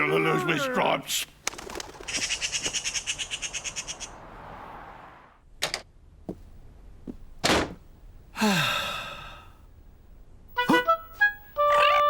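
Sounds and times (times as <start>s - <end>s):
cartoon knocks and thuds: 7.1s - 7.8s.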